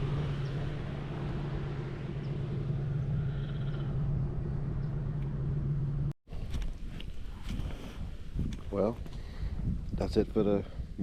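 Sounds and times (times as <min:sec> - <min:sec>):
boat engine droning: 0:00.0 - 0:06.2.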